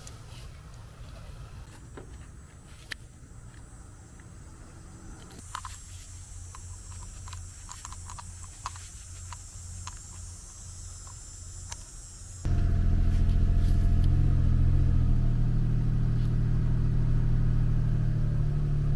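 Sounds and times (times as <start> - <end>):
car engine running: 12.3 - 18.9.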